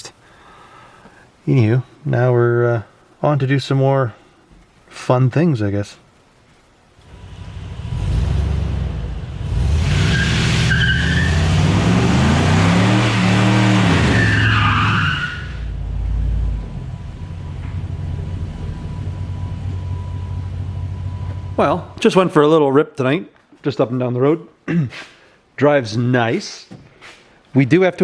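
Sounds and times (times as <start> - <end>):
car engine revving: 7.1 - 15.0
tires squealing: 7.1 - 15.8.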